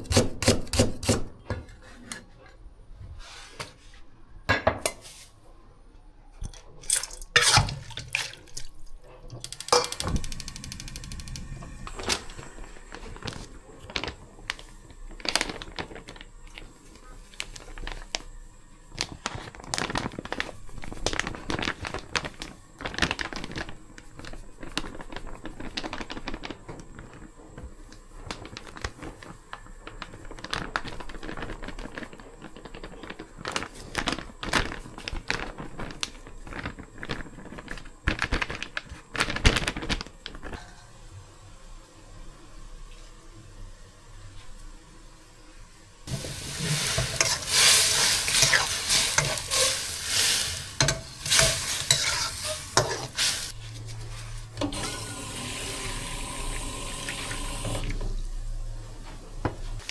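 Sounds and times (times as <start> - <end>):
utensils knocking and clicking: 9.3 - 11.5.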